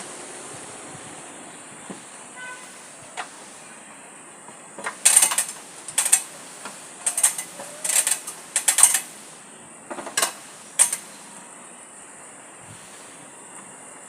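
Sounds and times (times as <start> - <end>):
metallic hardware clicking and rattling: 4.8 - 9.2, 9.9 - 11.1.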